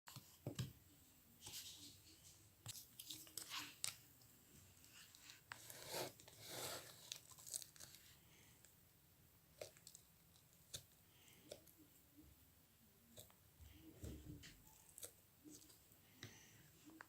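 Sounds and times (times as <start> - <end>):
slime crackling and squelching: 4.9 - 8.2.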